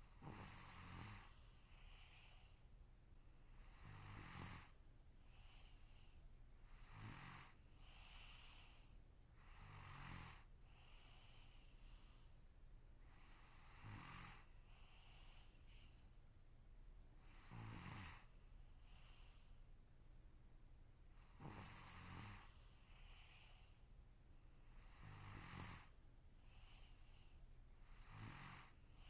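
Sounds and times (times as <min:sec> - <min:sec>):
person snoring: 0:00.2 - 0:02.4, 0:03.6 - 0:04.8, 0:06.7 - 0:08.7, 0:09.4 - 0:11.4, 0:13.3 - 0:15.4, 0:17.2 - 0:18.3, 0:21.3 - 0:23.7, 0:24.8 - 0:25.9, 0:27.8 - 0:28.8.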